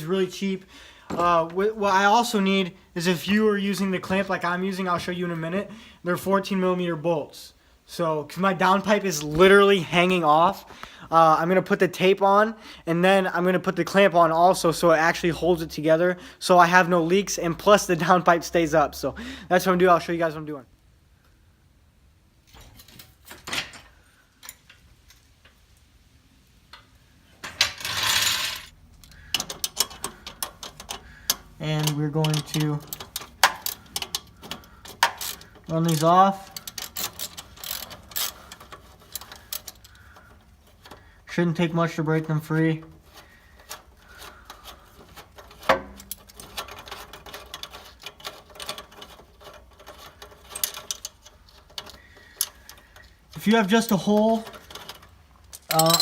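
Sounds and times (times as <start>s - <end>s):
hand tools clinking on metal: 28.0s - 41.0s, 42.7s - 56.0s
ratchet wrench clicking: 36.6s - 41.0s.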